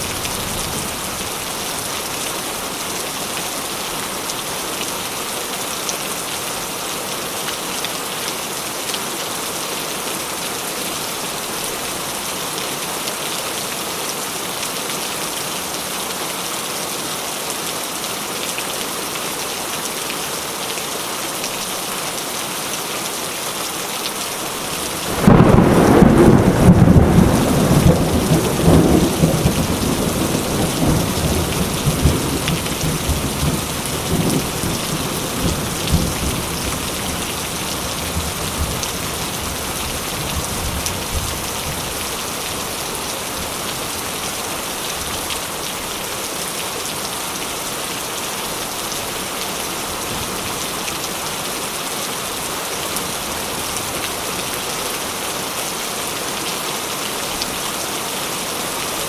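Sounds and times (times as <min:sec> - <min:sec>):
steady rain: 0:00.0 - 0:59.0
thunder rumbling: 0:24.7 - 0:38.8.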